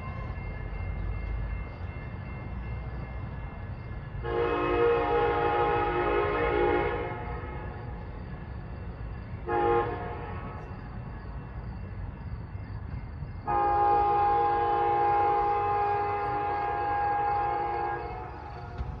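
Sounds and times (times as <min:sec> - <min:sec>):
train rumbling: 0:00.0 - 0:19.0
train horn blasts: 0:04.2 - 0:08.0, 0:09.4 - 0:10.8, 0:13.4 - 0:19.0.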